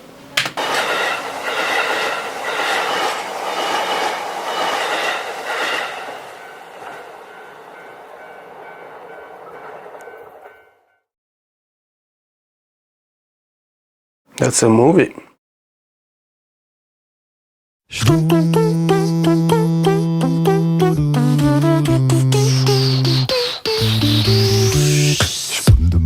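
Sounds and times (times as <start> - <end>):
sharp click: 0.4 - 0.6
rhythmic train-like clatter: 0.6 - 10.9
high ringing tones: 3.9 - 11.0.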